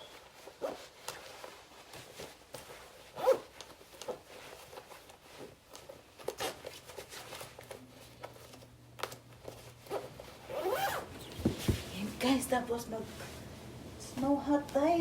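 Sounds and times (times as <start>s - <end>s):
zipper being worked: 0.0s - 1.6s, 2.2s - 5.2s, 9.8s - 11.4s
fabric rustling: 0.0s - 14.5s.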